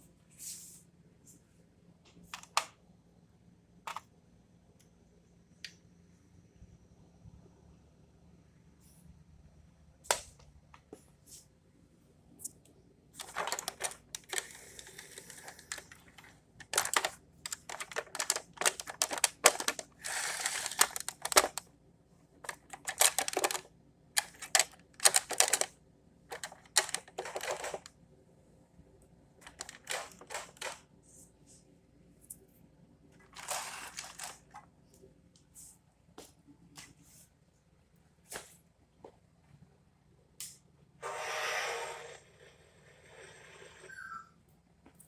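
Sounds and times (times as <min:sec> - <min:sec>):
rapid sharp clicking and clattering: 0:13.2 - 0:21.6, 0:22.5 - 0:23.6, 0:24.2 - 0:25.7, 0:26.3 - 0:27.9.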